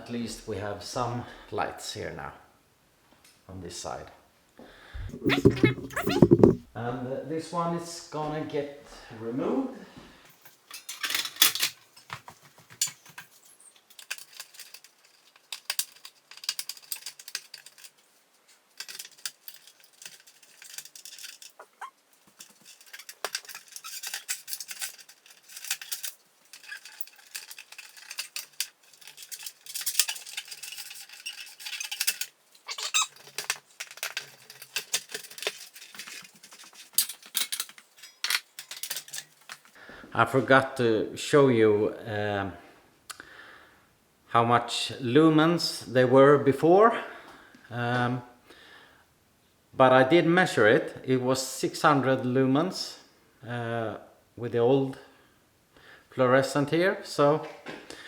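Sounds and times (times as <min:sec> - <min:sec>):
squeaks and clicks: 0:05.0 - 0:06.6, 0:21.4 - 0:22.0, 0:23.0 - 0:24.4, 0:32.7 - 0:33.2.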